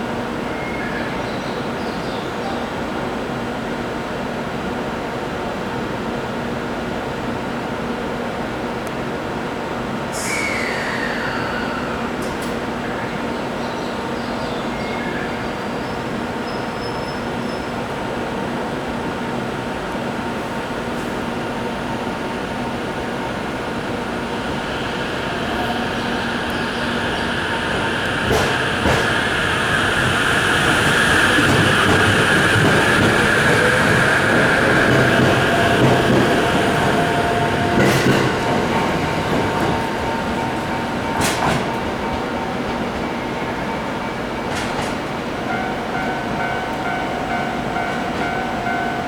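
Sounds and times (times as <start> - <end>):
train wheels rumbling on rails: 9.8 - 49.0
train hiss: 9.9 - 14.1, 20.0 - 49.0.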